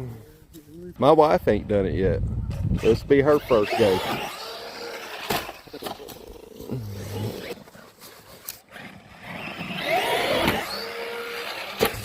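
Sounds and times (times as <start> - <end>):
electric motor whining: 2.8 - 7.6, 8.7 - 12.0.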